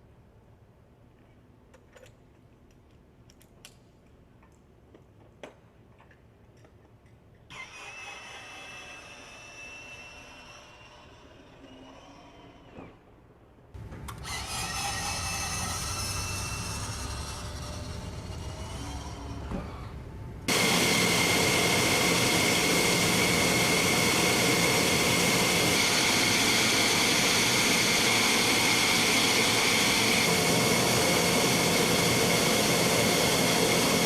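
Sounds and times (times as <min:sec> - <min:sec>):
jet engine whine: 0:13.8 - 0:34.0.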